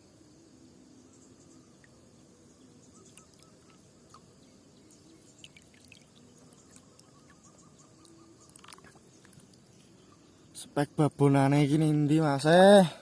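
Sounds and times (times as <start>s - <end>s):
faint outdoor ambience: 0.0s - 13.0s
small repeated chirps: 1.1s - 10.6s.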